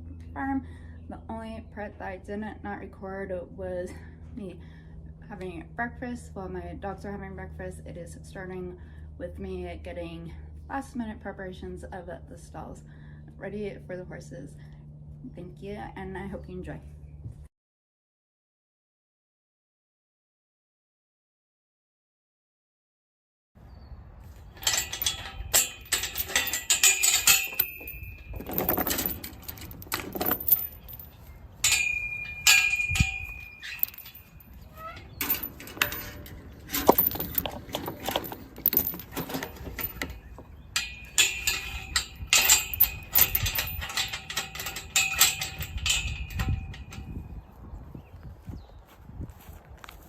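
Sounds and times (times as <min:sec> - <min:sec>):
tools knocking and scraping: 0:24.4 - 0:47.2.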